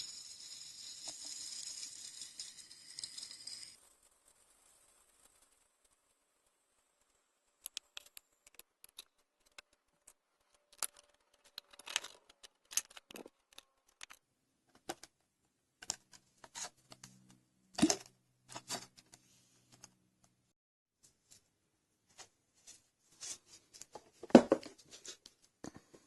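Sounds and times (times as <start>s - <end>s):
small objects clicking and crinkling: 0.0s - 6.4s, 7.0s - 15.2s, 15.8s - 19.2s.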